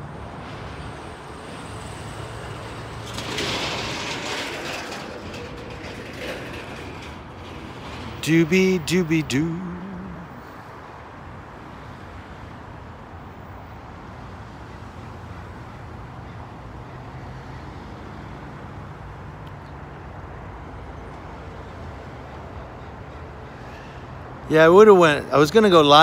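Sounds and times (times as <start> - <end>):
roadside traffic hum: 0.0 - 26.0.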